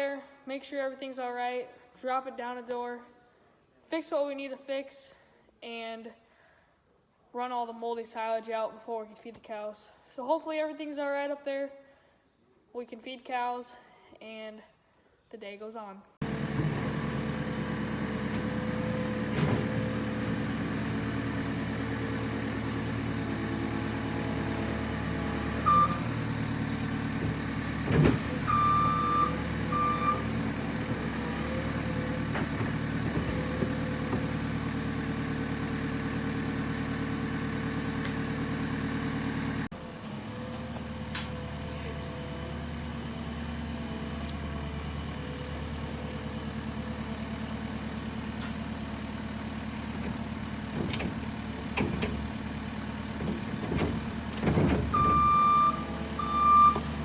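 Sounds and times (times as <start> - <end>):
vehicle engine running: 16.2 - 57.0.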